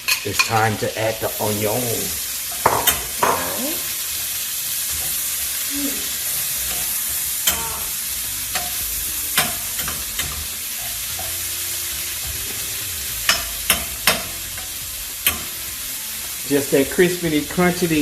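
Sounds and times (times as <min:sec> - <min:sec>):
onion sizzling in a pan: 0:00.0 - 0:18.0
utensil clicking against pan: 0:06.3 - 0:12.2, 0:13.2 - 0:15.6.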